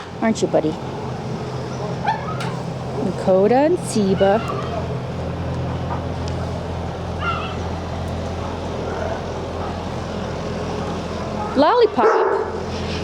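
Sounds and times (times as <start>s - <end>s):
low mechanical hum: 0.0s - 13.0s
dog yelp: 7.2s - 7.6s, 12.0s - 12.5s.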